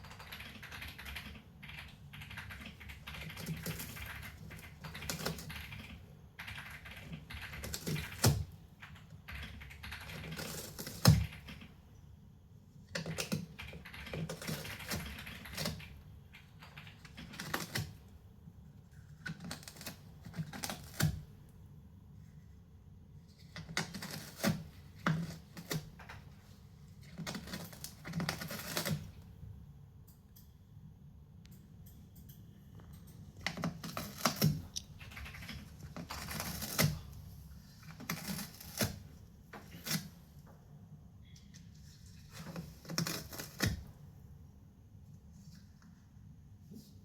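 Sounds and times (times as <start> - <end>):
cat scratching cardboard: 2.9 - 8.6, 9.4 - 11.6, 12.9 - 16.0, 16.8 - 18.1, 18.9 - 21.5, 23.1 - 29.4, 33.4 - 40.4, 41.8 - 44.0.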